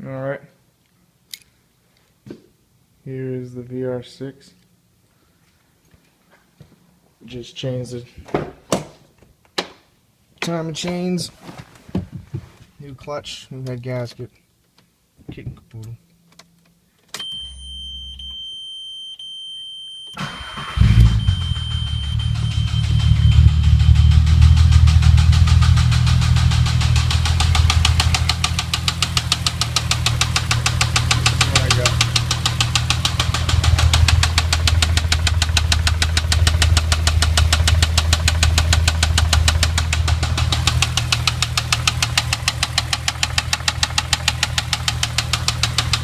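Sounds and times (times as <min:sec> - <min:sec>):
car engine drone with rapid knock: 0:20.9 - 0:46.0.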